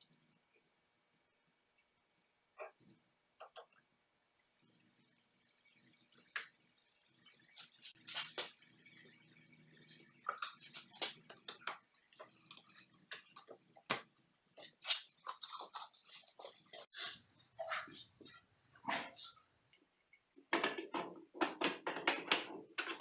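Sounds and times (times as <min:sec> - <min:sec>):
sharp clicks and knocks: 0:20.4 - 0:23.0.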